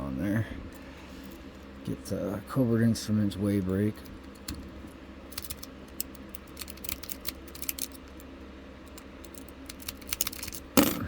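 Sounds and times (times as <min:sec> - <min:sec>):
lock pick clicking and scraping: 0:05.3 - 0:08.0, 0:08.9 - 0:10.7.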